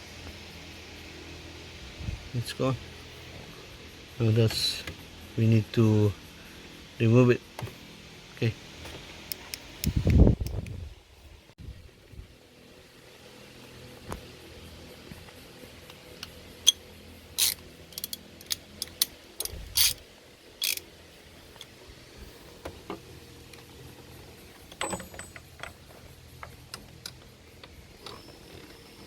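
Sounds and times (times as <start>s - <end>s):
hand tools clinking on metal: 24.6s - 25.9s.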